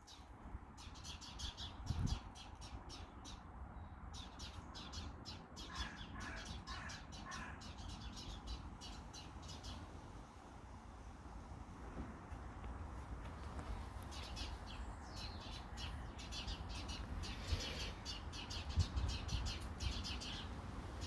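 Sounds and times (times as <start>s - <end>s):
small birds chirping: 0.0s - 10.0s, 13.6s - 21.0s.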